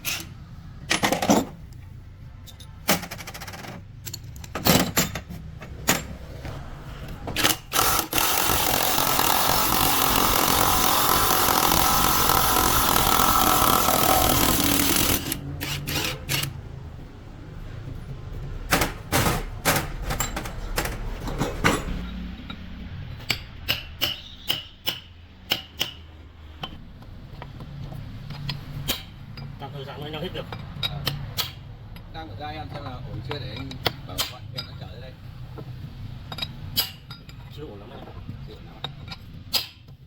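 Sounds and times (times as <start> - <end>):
metal knocks and clinks: 0.8 - 1.7, 2.4 - 6.2, 18.6 - 22.6
power tool running: 7.4 - 16.6.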